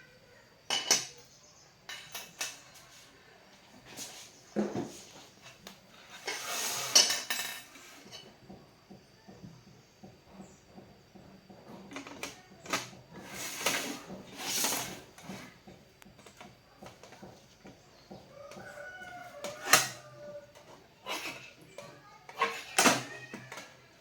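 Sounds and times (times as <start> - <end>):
scraping or rustling noise: 3.8 - 8.2, 13.1 - 15.6.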